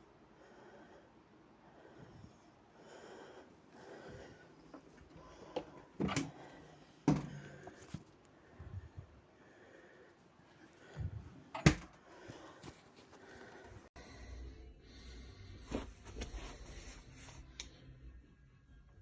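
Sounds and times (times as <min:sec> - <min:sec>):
knocks and clunks: 0:07.0 - 0:07.5.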